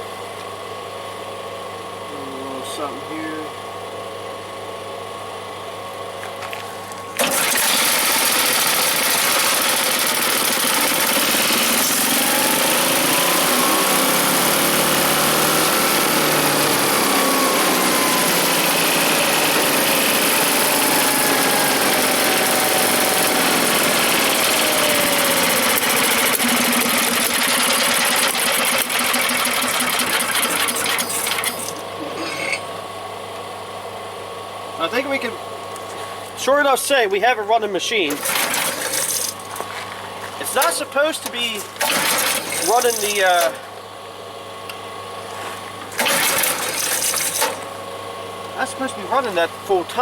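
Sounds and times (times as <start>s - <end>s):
small gas engine running fast: 7.2s - 31.6s, 41.8s - 43.2s, 46.0s - 47.6s.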